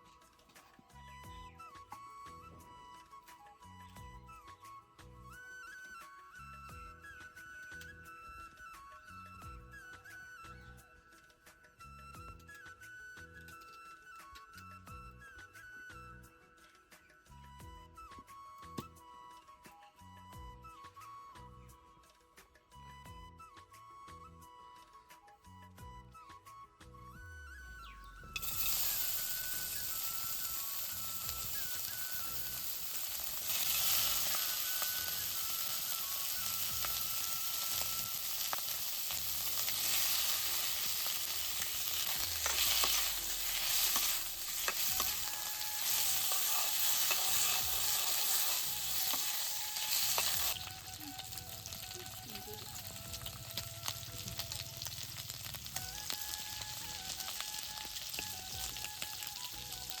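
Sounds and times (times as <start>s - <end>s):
soft background music: 0.0s - 60.0s
pork sizzling in a hot pan: 28.3s - 60.0s
scraping in pan: 39.4s - 50.6s.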